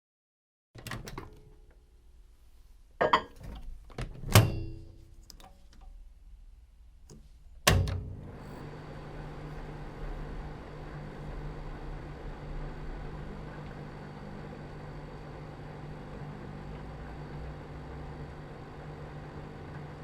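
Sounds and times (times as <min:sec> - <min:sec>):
dish clunking: 0:03.0 - 0:03.5
microwave door shutting: 0:04.1 - 0:04.9, 0:07.7 - 0:08.5
microwave humming: 0:04.2 - 0:05.0, 0:07.6 - 0:20.0
microwave door clicking open: 0:07.7 - 0:08.1.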